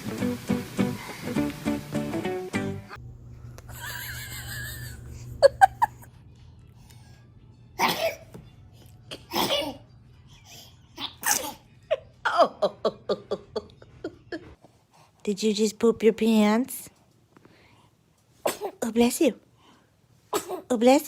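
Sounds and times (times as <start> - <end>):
baby sneezing: 7.8 - 8.3, 9.1 - 9.8, 11.0 - 11.7, 18.4 - 18.8, 20.3 - 20.7.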